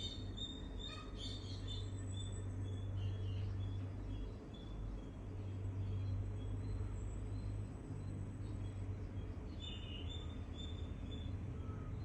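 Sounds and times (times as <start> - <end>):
songbirds chirping faintly: 0.0 - 12.0.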